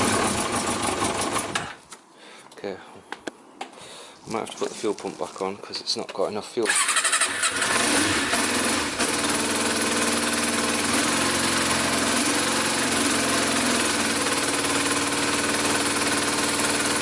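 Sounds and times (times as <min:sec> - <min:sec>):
motorcycle engine idling: 0:00.0 - 0:01.6, 0:07.5 - 0:17.0.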